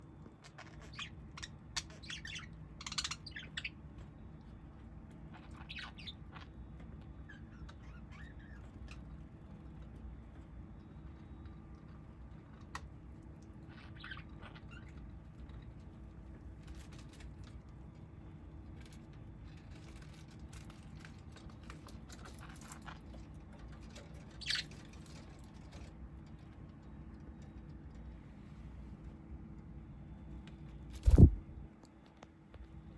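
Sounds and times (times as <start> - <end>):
small bird chirping: 0.3 - 4.6, 5.2 - 9.6, 13.6 - 15.7, 24.2 - 25.3, 31.0 - 31.4
steady low hum: 23.4 - 32.9.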